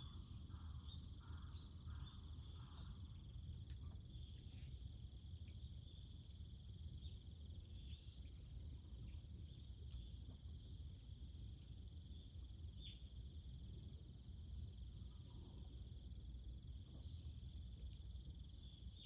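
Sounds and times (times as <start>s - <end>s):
faint ticks: 3.5s - 3.9s.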